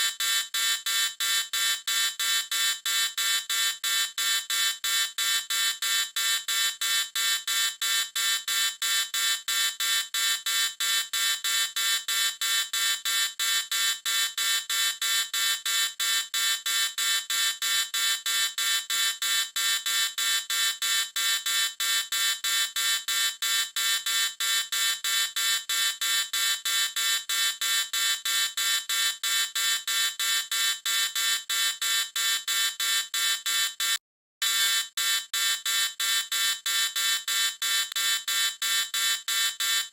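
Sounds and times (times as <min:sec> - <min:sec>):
high-pitched electronic alarm beeping: 0:29.1 - 0:39.9.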